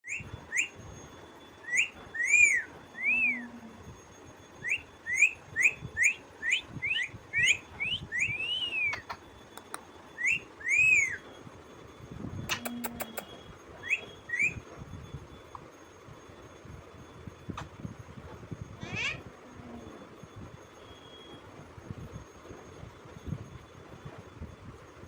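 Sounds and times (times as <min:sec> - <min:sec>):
parrot whistling calls: 0:00.1 - 0:00.8, 0:01.6 - 0:03.5, 0:04.6 - 0:09.2, 0:10.2 - 0:11.2, 0:12.5 - 0:14.6, 0:18.8 - 0:19.3
sharp clicks: 0:08.9 - 0:09.9, 0:12.5 - 0:13.2.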